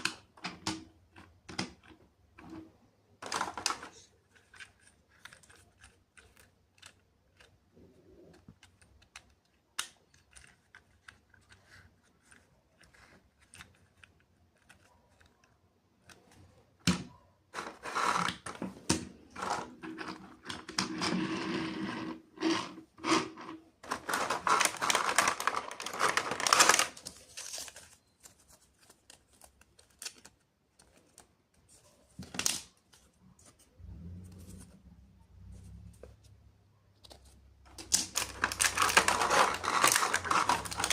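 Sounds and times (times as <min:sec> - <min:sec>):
packaging crinkling and tearing: 0:23.8 - 0:31.3, 0:37.8 - 0:40.9.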